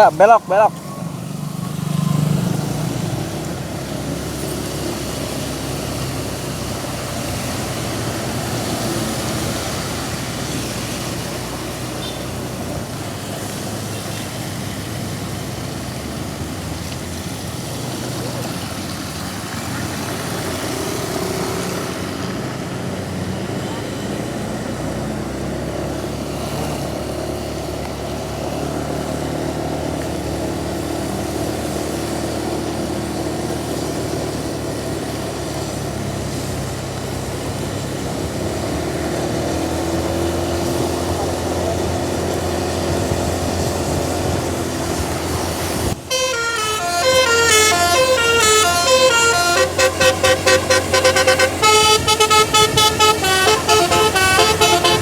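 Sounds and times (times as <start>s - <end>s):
vehicle road noise: 0.0s - 55.0s
musical air horn melody: 46.1s - 55.0s.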